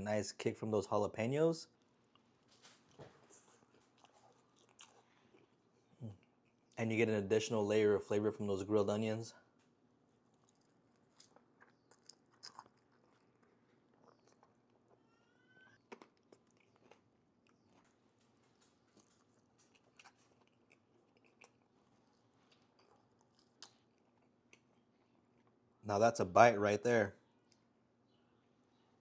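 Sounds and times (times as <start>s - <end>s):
chewing mouth clicks and smacks: 3.4s - 6.8s, 10.2s - 15.0s, 15.7s - 25.6s.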